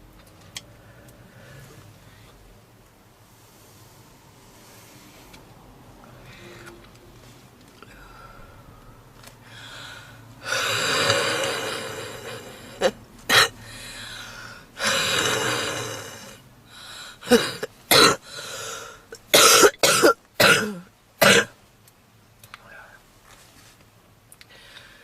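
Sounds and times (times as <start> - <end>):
noisy breaths: 0.6 - 19.2, 24.4 - 25.0
woman coughing: 12.3 - 13.6, 17.2 - 18.2, 19.2 - 21.5.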